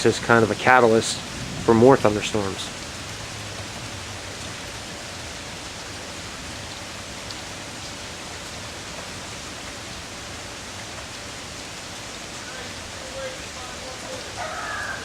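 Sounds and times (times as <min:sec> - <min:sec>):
rain hissing: 0:00.0 - 0:15.0
faint drip ticks: 0:06.7 - 0:09.1.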